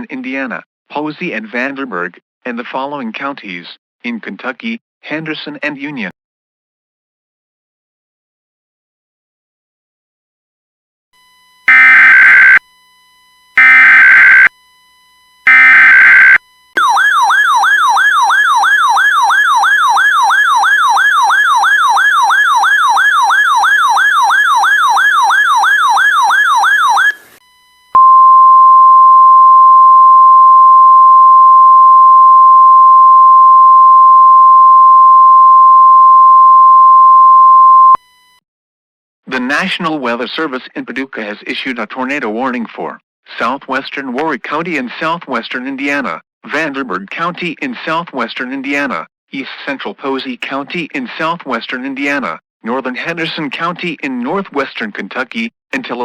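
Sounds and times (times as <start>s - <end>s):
steady warning alarm tone: 11.2s - 28.0s
data burst tones: 11.7s - 12.6s, 13.6s - 14.5s, 15.5s - 17.0s
electronic siren sweeping up and down: 11.7s - 12.6s, 13.6s - 14.5s, 15.4s - 27.4s.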